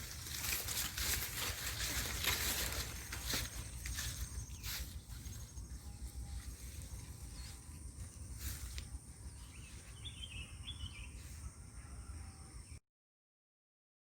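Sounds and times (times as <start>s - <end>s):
steady high-pitched tone: 3.4s - 12.8s.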